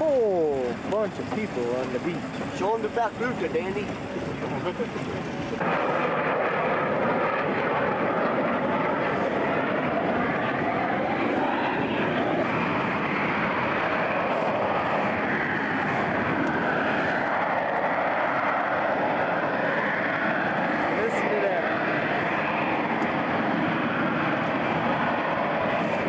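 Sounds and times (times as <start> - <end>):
jet aircraft roaring overhead: 0.0 - 26.0.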